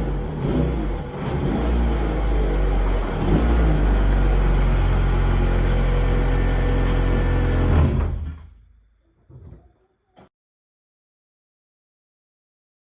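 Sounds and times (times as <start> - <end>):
car engine running: 0.0 - 8.0.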